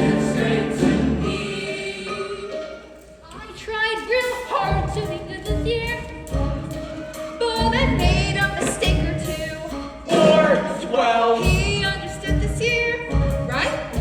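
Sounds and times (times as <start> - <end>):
choir singing: 0.0 - 3.1, 6.7 - 12.1.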